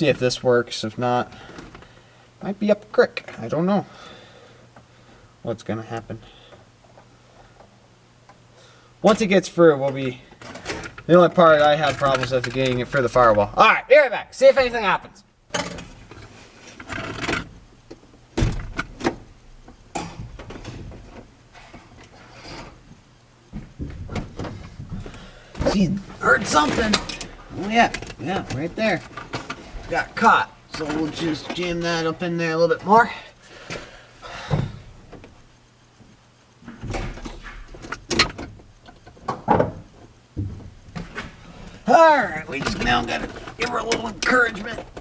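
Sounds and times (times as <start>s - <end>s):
clunks and scrapes of parts handled: 15.5s - 32.2s, 36.6s - 45.0s.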